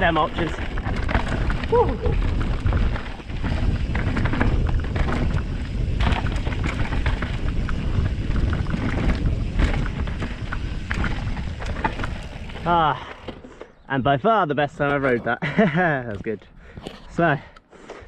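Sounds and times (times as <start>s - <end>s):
bike rattles and knocks: 0.0s - 13.9s
low wind rumble: 0.0s - 16.8s.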